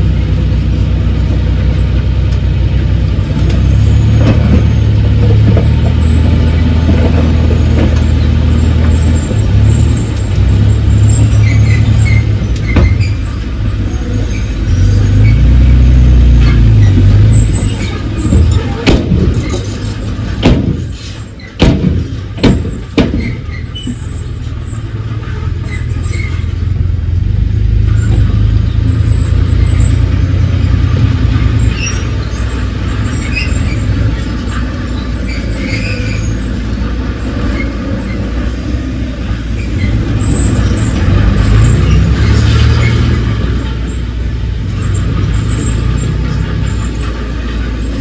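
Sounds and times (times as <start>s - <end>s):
heavy diesel engine under load: 0.0s - 48.0s
sharp metallic knocks: 16.4s - 24.2s.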